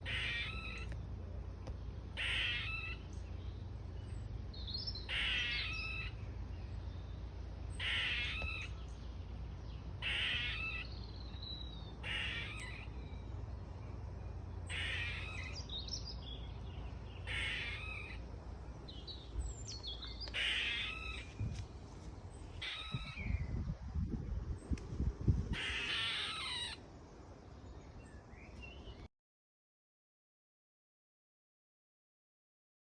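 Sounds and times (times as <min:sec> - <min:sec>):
squirrel calling harshly: 0:00.0 - 0:01.0, 0:02.1 - 0:03.2, 0:04.8 - 0:06.3, 0:07.7 - 0:08.9, 0:10.0 - 0:13.4, 0:14.6 - 0:18.3, 0:20.0 - 0:21.6, 0:22.4 - 0:23.4, 0:25.5 - 0:26.8.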